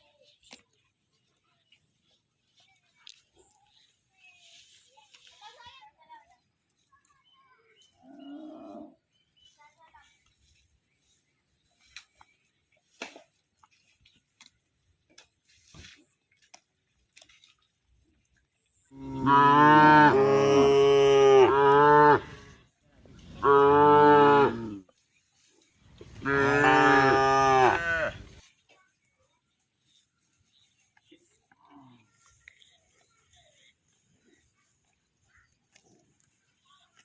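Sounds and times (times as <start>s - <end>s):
cow mooing: 19.0s - 22.3s, 23.4s - 24.8s, 26.2s - 28.2s.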